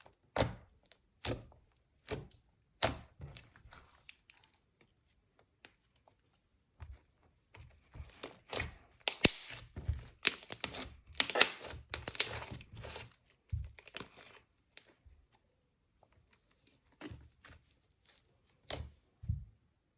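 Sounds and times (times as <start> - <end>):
slime crackling and popping: 8.5 - 13.0.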